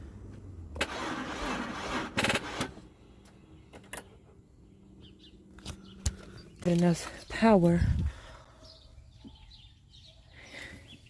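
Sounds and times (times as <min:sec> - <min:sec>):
starter motor whirring: 0:00.7 - 0:02.9.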